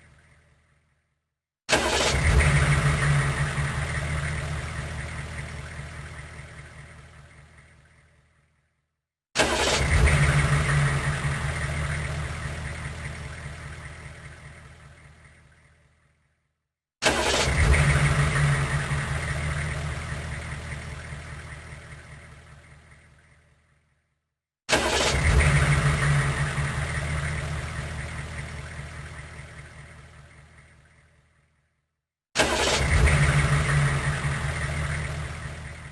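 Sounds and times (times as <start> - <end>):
truck engine rumbling: 32.4 - 35.9.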